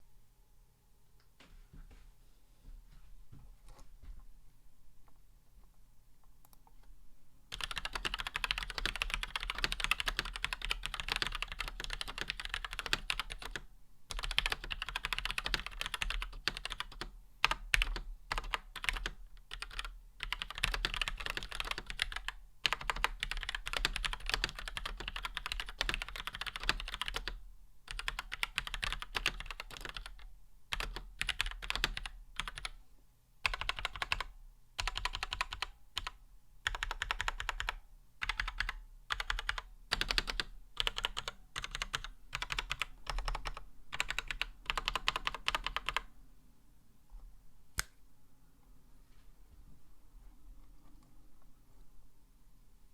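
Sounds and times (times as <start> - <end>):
fast typing on mechanical keyboard: 7.5 - 32.8, 33.4 - 46.1.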